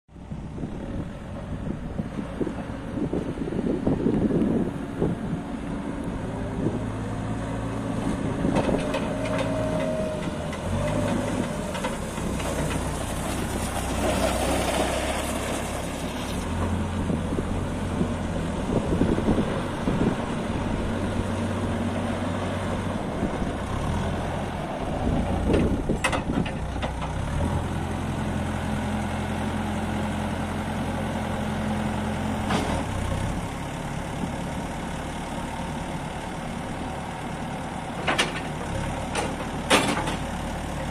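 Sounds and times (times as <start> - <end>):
diesel engine running: 0.1 - 40.9.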